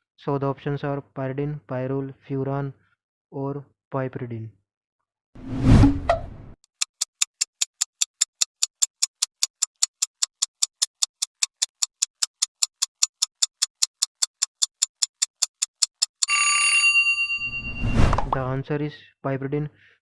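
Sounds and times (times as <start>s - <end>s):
countdown timer ticking: 6.8s - 16.3s.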